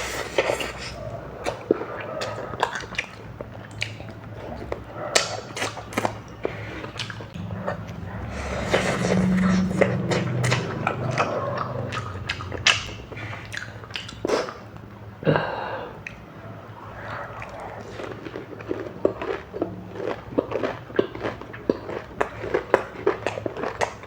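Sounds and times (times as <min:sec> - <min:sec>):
chewing and biting: 0:00.0 - 0:14.9, 0:16.0 - 0:24.0
wet clicks and smacks: 0:10.2 - 0:14.3.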